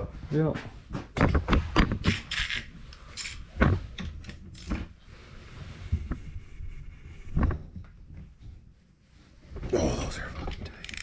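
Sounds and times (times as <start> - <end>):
metal tools clinking: 2.1 - 3.4.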